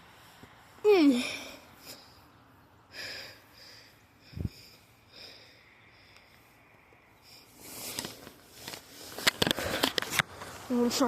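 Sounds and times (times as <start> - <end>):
person sniffing and breathing: 2.9 - 8.3
handling noise rustling and clicks: 7.6 - 10.7.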